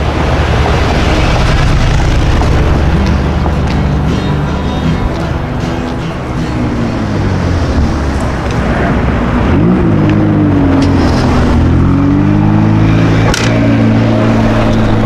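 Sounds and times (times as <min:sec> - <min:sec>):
car engine revving: 0:00.0 - 0:15.0.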